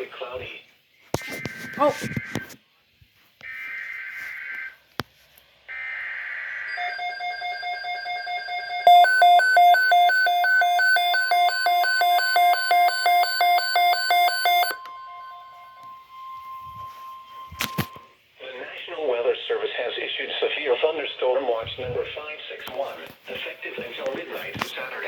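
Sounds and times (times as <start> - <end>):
steady warning tone: 5.7 - 18.2
pulsing electronic alarm beep: 5.8 - 18.2.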